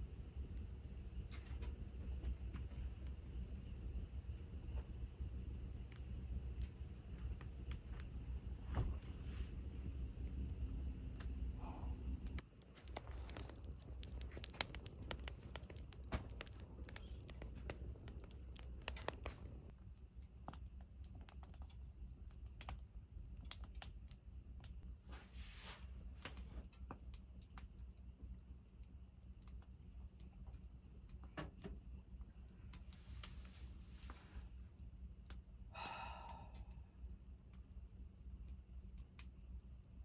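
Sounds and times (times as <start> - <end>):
small objects clicking and tapping: 12.3 - 22.8.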